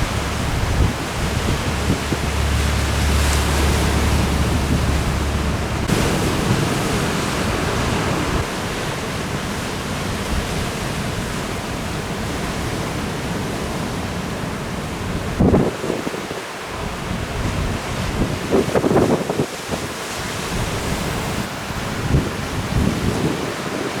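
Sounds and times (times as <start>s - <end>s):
ocean surf breaking: 0.0s - 24.0s
wind blowing across microphone: 0.0s - 24.0s
wind buffeting microphone: 0.0s - 24.0s.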